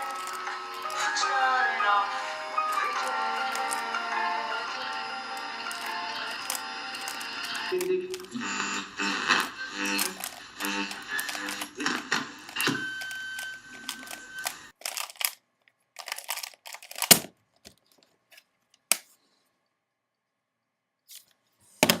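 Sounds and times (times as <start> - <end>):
background music: 0.0 - 11.8.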